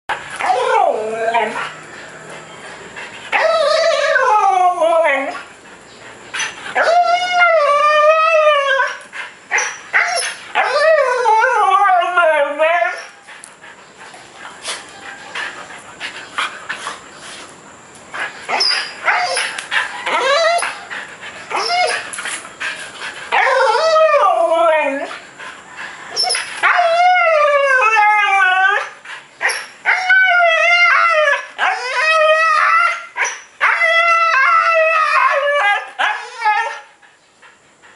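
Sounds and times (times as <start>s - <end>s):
dog howling: 3.3s - 5.4s, 6.8s - 9.0s, 18.5s - 22.0s, 26.1s - 29.0s.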